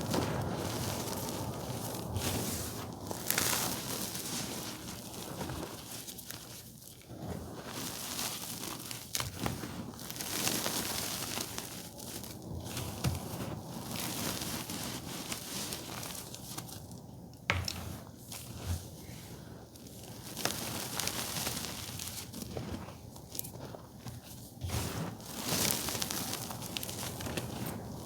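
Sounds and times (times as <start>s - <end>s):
wind rumble on microphone: 0.0s - 6.1s
chalk crunching and crumbling: 17.5s - 28.0s.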